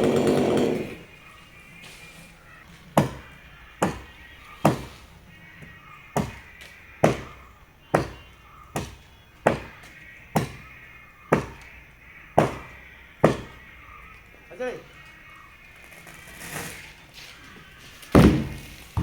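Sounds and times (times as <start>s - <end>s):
axe chopping wood: 3.0s - 5.0s, 6.2s - 10.7s, 11.3s - 11.8s, 12.4s - 13.6s, 18.1s - 19.0s.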